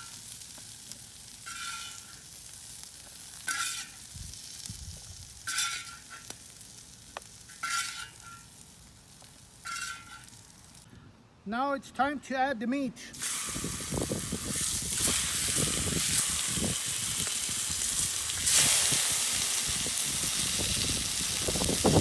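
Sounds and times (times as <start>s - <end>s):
onions and peppers sizzling: 0.0s - 10.9s, 13.1s - 22.0s
utensil scraping pan: 1.5s - 2.2s, 3.4s - 4.1s, 5.5s - 6.3s, 7.5s - 8.5s, 9.6s - 10.3s.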